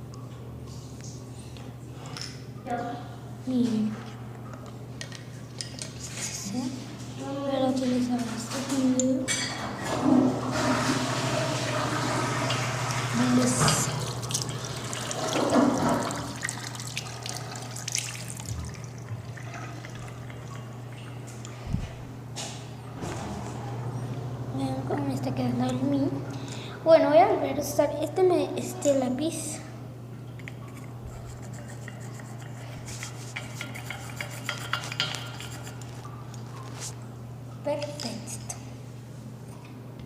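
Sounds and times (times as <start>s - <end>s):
water splashing in a bowl: 10.6s - 21.4s
steady low hum: 12.7s - 40.0s
pencil tip tapping and scraping bowl: 30.4s - 36.1s.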